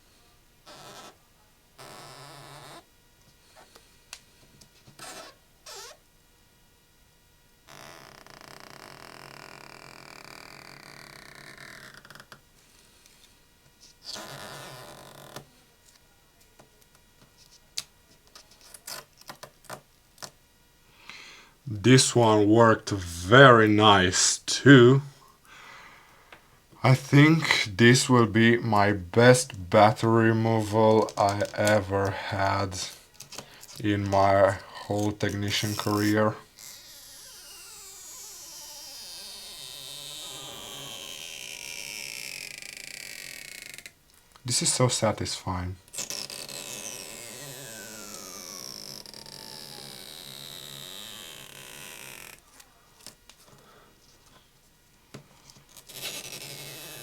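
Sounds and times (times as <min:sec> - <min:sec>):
adhesive strip squealing: 0:05.0 - 0:06.0, 0:35.6 - 0:43.9, 0:46.0 - 0:52.4, 0:55.7 - 0:57.0.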